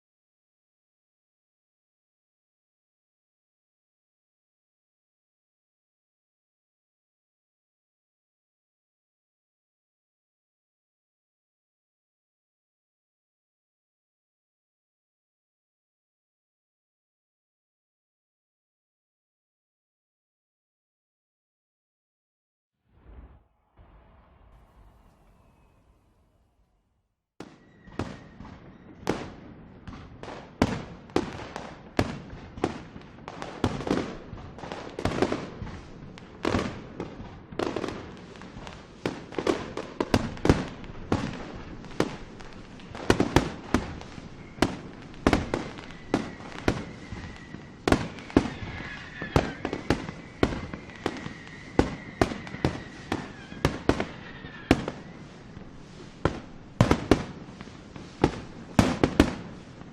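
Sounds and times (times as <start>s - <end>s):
fireworks bangs: 22.9s - 59.9s
fireworks crackling: 29.9s - 59.9s.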